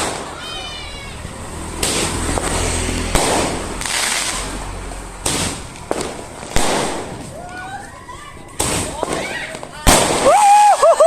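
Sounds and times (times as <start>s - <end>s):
firecracker bangs with crackling hiss: 0.0s - 1.0s, 1.8s - 4.6s, 5.2s - 7.6s, 8.5s - 10.7s.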